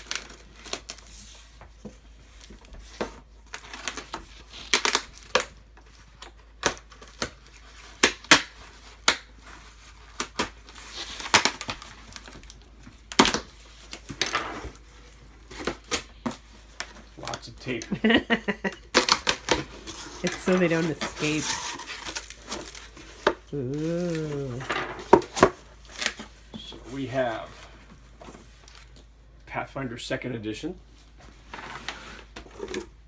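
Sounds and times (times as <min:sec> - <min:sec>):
packing tape tearing: 0:00.0 - 0:01.1, 0:03.5 - 0:17.9, 0:18.7 - 0:26.4
cardboard flaps crackling: 0:19.0 - 0:28.9.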